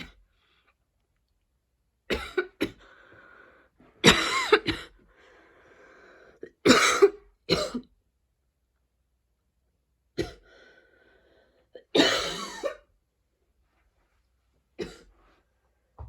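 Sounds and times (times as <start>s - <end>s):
woman coughing hard: 2.1s - 2.8s, 4.0s - 5.0s, 6.6s - 7.9s, 11.9s - 12.9s, 14.8s - 15.1s
strained breaths: 2.8s - 4.0s, 5.1s - 6.4s.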